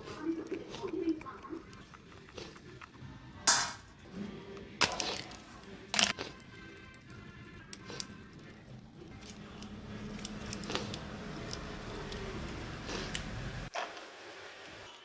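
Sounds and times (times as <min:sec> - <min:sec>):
electric fan motor humming: 0:09.0 - 0:14.9.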